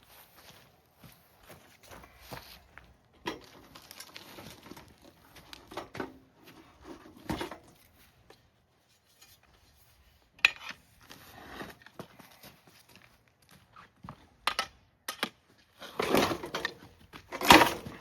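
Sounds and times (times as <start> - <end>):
hand truck knocks and rattles: 16.0 - 18.0.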